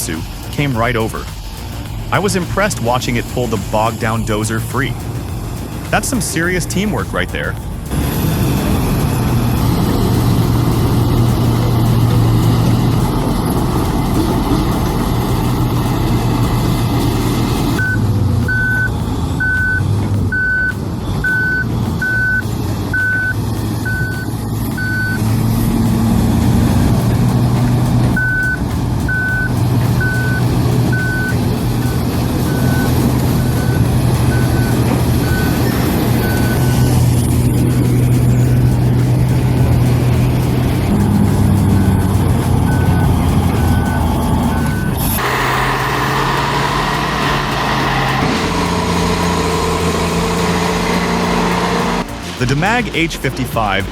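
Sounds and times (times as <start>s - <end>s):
bulldozer diesel engine: 0.0s - 53.9s
backup alarm beeping: 17.8s - 25.3s, 28.2s - 37.0s, 41.8s - 45.0s.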